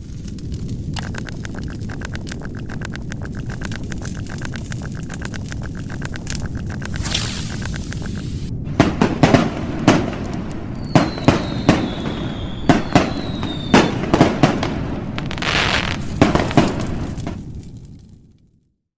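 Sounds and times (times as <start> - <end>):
sharp bangs and pops: 9.0 - 17.4
falling whistling tone: 10.8 - 14.1.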